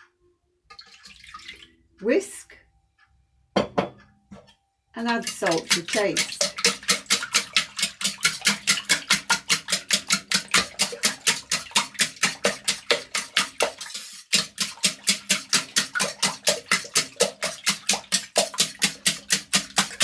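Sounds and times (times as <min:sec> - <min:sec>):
whisk knocking against bowl: 0:05.0 - 0:20.0.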